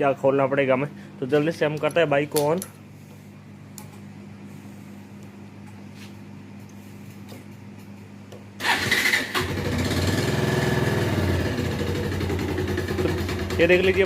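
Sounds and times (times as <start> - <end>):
motorcycle engine starting and idling: 8.6 - 14.0.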